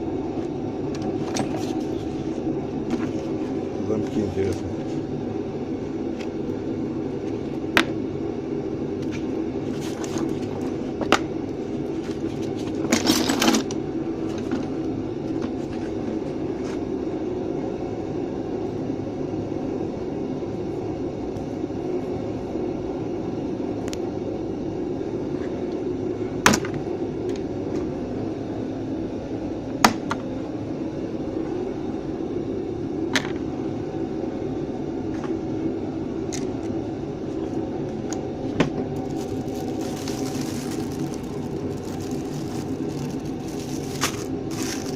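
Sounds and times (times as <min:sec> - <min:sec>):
fan-like hum: 0:00.0 - 0:44.9.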